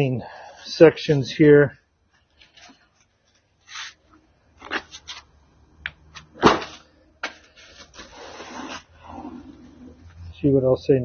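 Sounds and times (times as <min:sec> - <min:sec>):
pads cracking and scraping off metal: 0:06.1 - 0:08.9.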